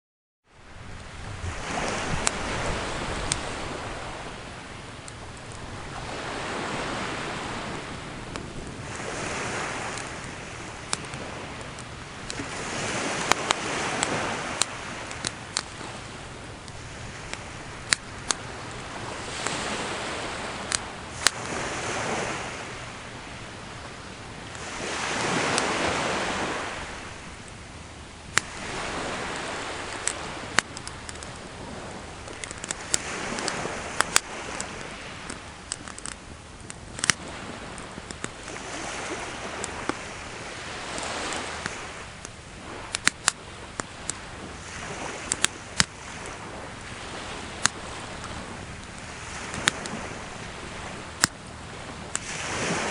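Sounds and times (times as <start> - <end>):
sea waves washing onto shore: 0.5 - 52.9
campfire popping and crackling: 9.6 - 21.4, 28.2 - 44.4, 45.2 - 51.4.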